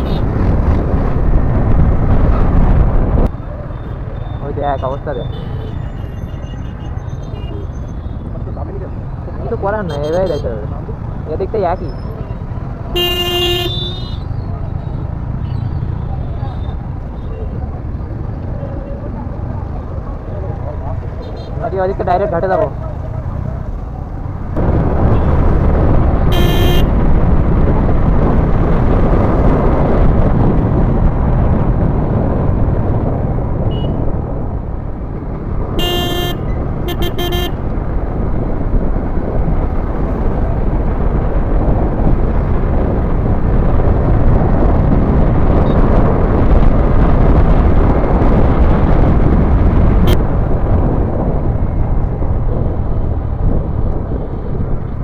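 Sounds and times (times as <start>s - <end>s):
wind rush on microphone: 0.0s - 55.0s
vehicle horn honking: 13.0s - 14.2s, 26.3s - 26.9s, 35.8s - 37.6s.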